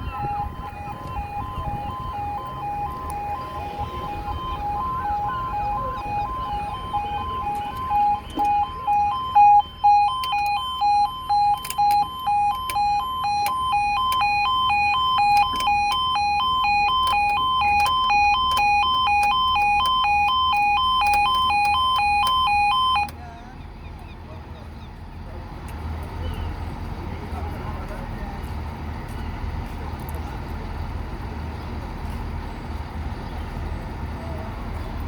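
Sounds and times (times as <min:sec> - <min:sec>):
level crossing alarms warbling: 0:00.0 - 0:23.1.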